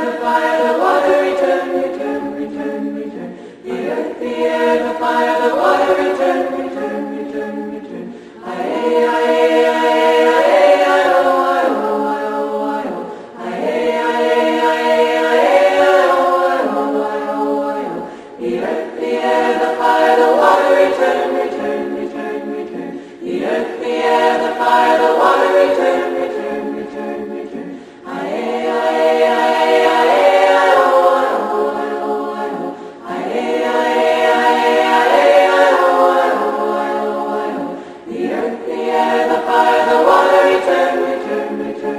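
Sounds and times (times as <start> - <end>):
a cappella choir singing: 0.0 - 41.9.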